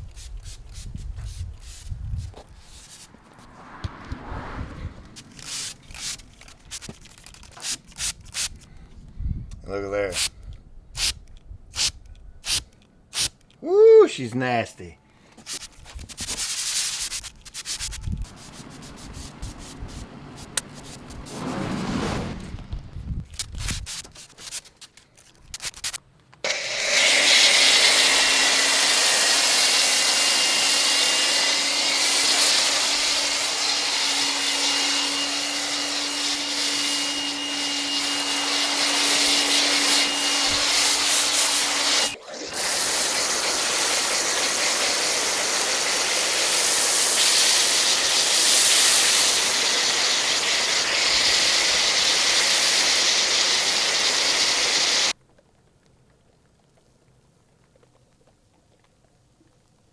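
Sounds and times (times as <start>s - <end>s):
pressure washer spraying: 16.4s - 22.0s, 26.5s - 55.1s.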